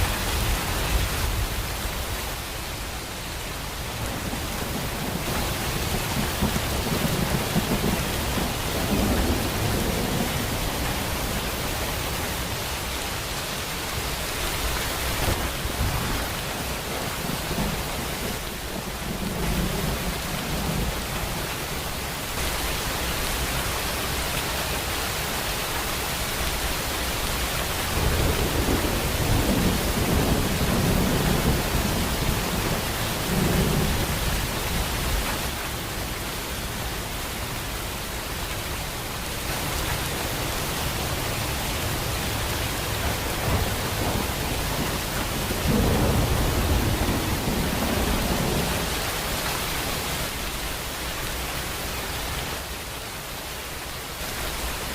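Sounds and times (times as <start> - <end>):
heavy rain falling: 0.0 - 54.9
thunder rumbling: 3.8 - 12.1, 27.7 - 35.2, 41.0 - 49.1.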